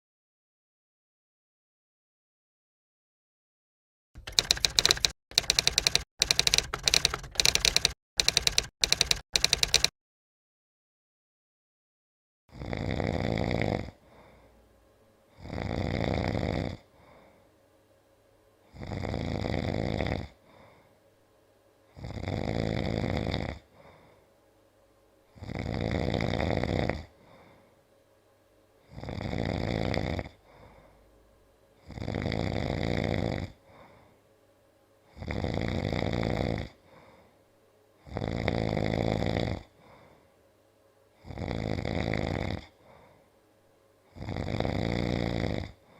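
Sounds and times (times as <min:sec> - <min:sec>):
man snoring loudly: 0:12.5 - 0:14.4, 0:15.3 - 0:17.0, 0:18.7 - 0:20.4, 0:21.9 - 0:23.8, 0:25.3 - 0:27.2, 0:28.9 - 0:30.4, 0:31.8 - 0:33.7, 0:35.1 - 0:36.8, 0:38.0 - 0:39.8, 0:41.2 - 0:42.8, 0:44.1 - 0:45.9.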